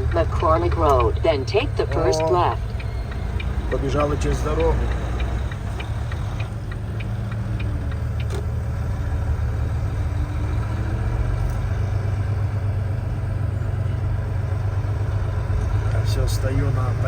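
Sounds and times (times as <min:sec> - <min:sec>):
light ticking: 0:00.0 - 0:13.9
diesel truck engine idling: 0:00.0 - 0:17.0.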